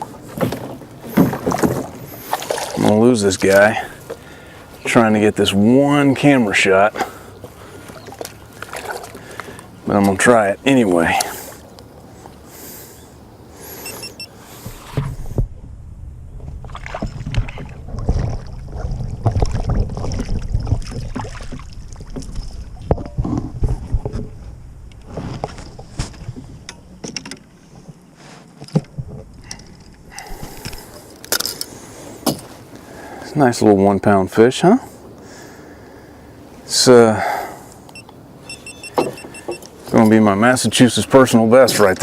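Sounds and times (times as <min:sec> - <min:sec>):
knocks and bumps in a kayak: 0:00.0 - 0:02.8, 0:14.6 - 0:28.0, 0:28.6 - 0:30.6, 0:38.9 - 0:39.6.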